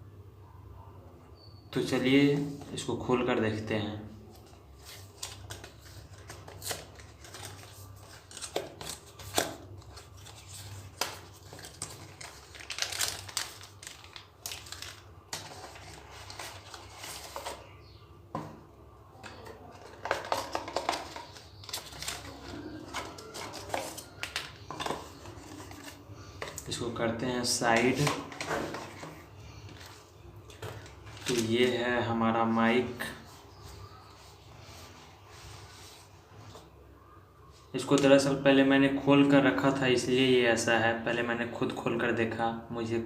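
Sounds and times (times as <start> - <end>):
packaging clicks and rustles: 4.4 - 17.6, 19.2 - 26.8, 27.7 - 31.6
packaging tearing: 5.1 - 17.4.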